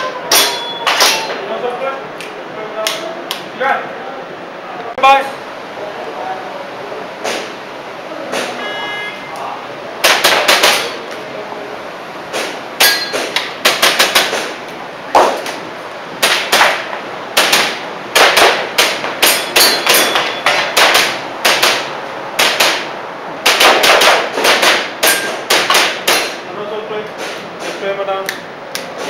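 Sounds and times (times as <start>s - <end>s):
airsoft pistol shots: 10.0s - 11.0s, 16.2s - 26.4s.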